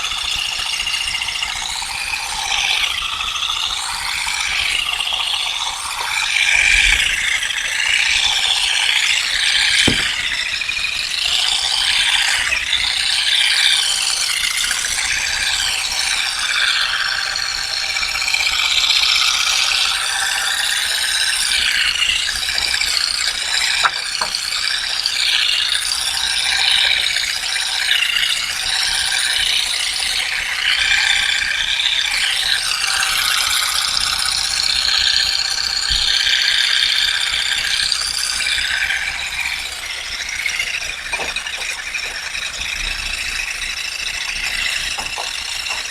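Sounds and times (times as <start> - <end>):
fast ratchet-like mechanical clattering: 0.0 - 45.9
sharp knock: 9.8 - 10.5.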